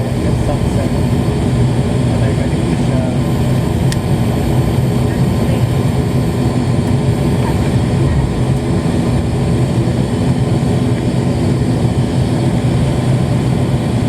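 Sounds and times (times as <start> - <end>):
turboprop engines droning: 0.0 - 14.0.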